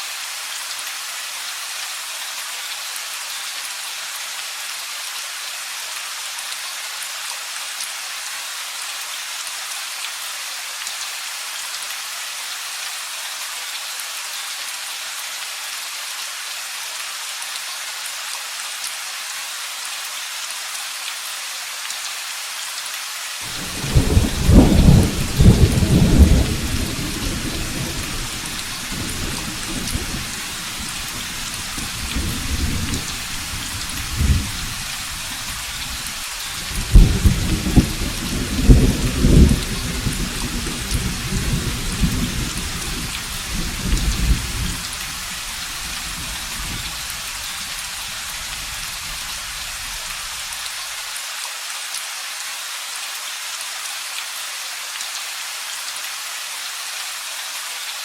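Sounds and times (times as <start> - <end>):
steady rain: 0.0 - 58.0
rolling thunder: 23.5 - 44.9.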